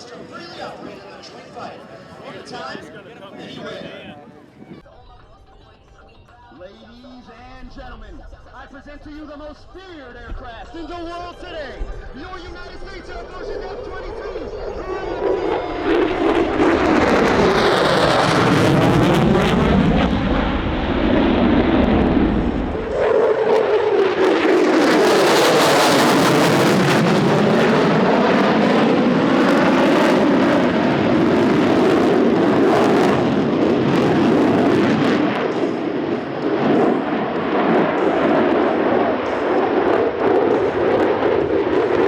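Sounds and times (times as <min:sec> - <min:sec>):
heavy deep rumble: 0:11.8 - 0:42.0
fighter jet passing: 0:12.2 - 0:42.0.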